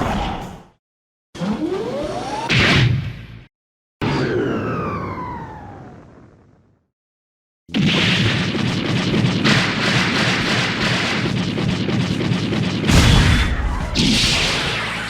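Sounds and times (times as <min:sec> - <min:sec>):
explosion with rumble: 0:12.9 - 0:14.9.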